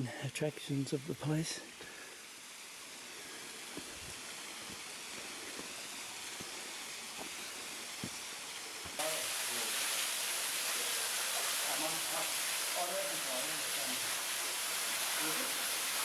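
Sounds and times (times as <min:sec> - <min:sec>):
waterfall rushing: 0:09.0 - 0:16.0.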